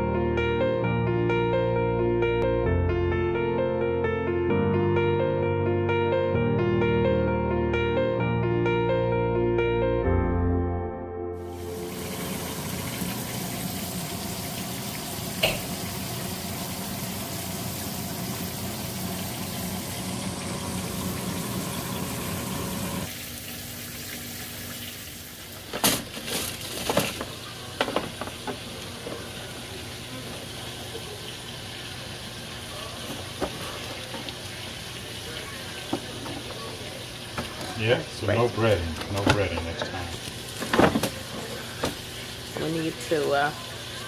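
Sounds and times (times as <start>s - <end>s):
meat sizzling: 11.4s - 44.0s
air fryer fan whoosh: 11.6s - 23.2s.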